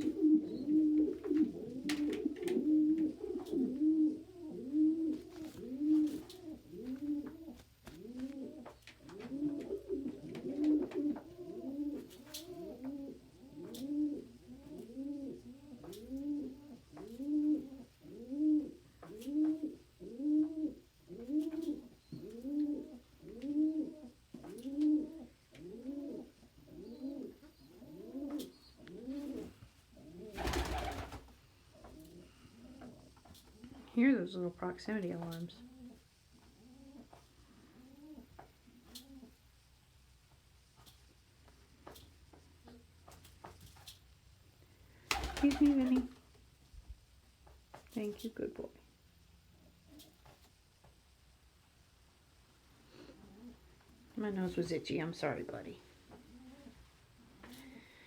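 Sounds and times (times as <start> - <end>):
pigeon cooing: 0.0 - 33.9, 35.5 - 39.4, 45.0 - 46.1, 52.9 - 54.1, 56.1 - 58.0.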